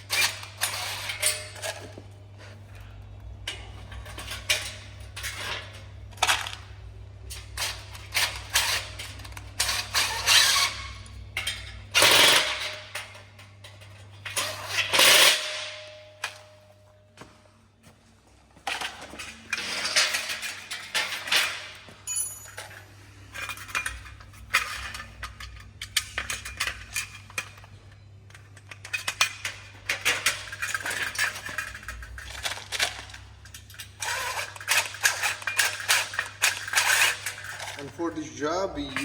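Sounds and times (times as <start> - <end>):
metal parts clattering: 18.7 - 27.7, 28.3 - 39.0.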